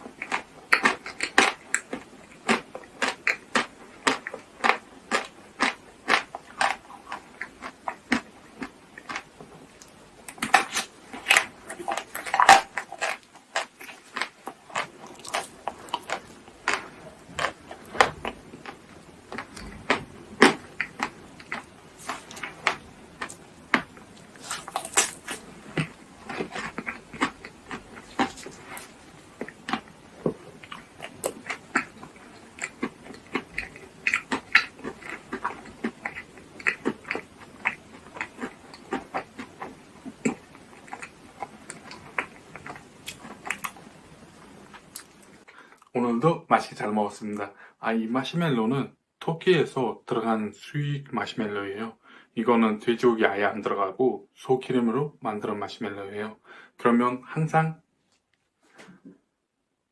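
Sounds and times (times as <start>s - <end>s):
chewing and biting: 0.0s - 43.9s.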